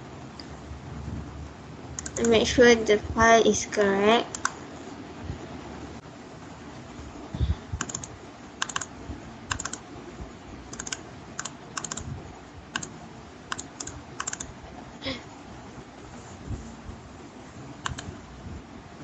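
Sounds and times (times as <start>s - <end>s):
computer keyboard keys clicking: 2.0s - 2.3s, 4.3s - 4.6s, 7.8s - 8.9s, 9.5s - 9.8s, 10.7s - 12.1s, 13.5s - 14.5s, 17.8s - 18.1s.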